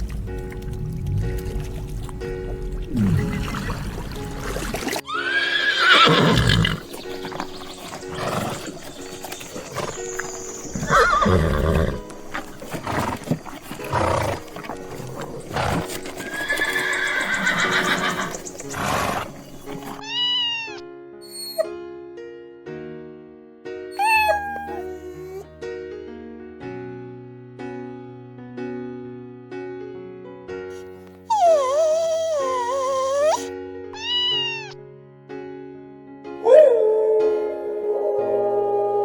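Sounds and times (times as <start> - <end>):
background music: 0.0 - 21.7, 30.7 - 39.0
horses whinnying: 5.1 - 21.7, 24.0 - 25.4, 31.3 - 34.8.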